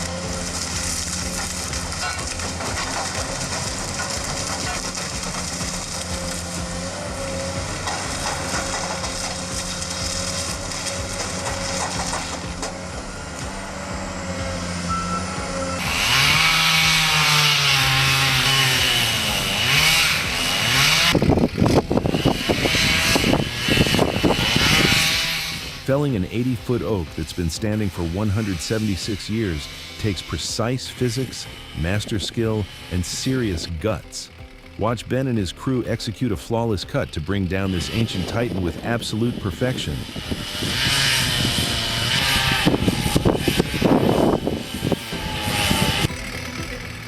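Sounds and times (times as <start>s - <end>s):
sharp cracks and knocks: 0.0s - 13.5s
motor revving: 0.0s - 25.9s, 27.1s - 34.9s, 37.2s - 47.0s
motor running steadily: 0.0s - 26.4s, 27.8s - 35.9s, 36.9s - 47.0s.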